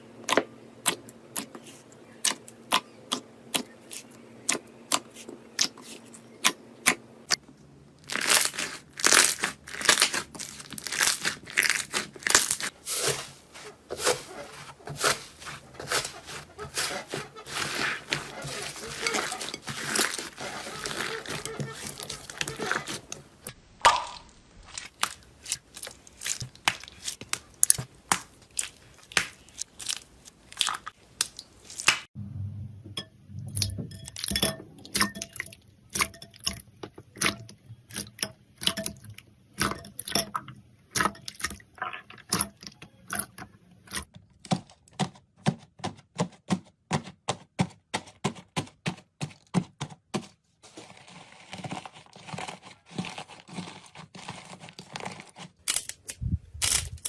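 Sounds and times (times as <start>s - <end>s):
slime popping and crackling: 8.0s - 12.7s, 23.8s - 32.1s.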